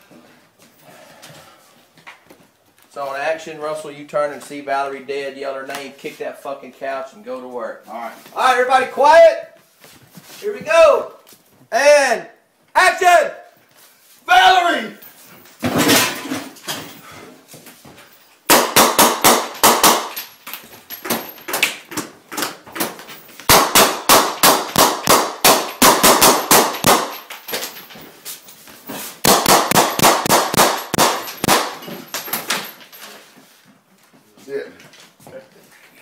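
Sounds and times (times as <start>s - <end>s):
rifle firing rapid shots: 23.5s - 27.1s, 29.3s - 31.8s.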